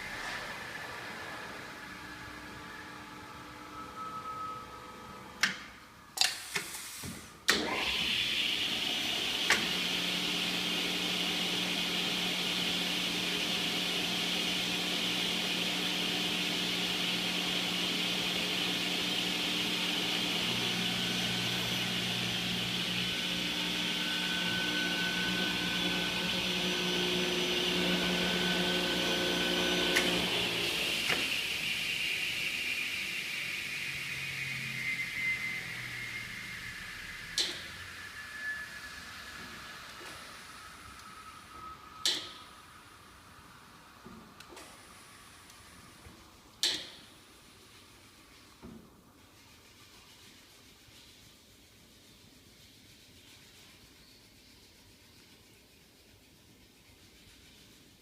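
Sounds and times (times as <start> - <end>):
panel saw motor and blade: 7.5 - 31.6.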